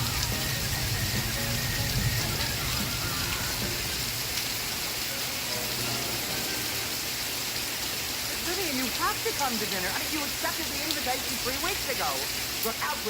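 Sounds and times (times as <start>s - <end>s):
steady rain on a surface: 0.0s - 13.0s.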